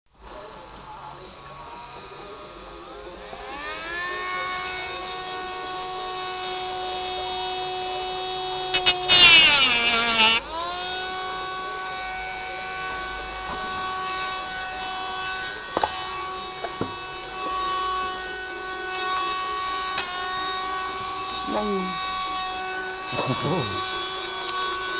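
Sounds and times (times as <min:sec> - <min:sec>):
milling machine spindle whine: 0:00.2 - 0:24.9
cutter biting into wood: 0:08.0 - 0:11.2, 0:11.9 - 0:24.9.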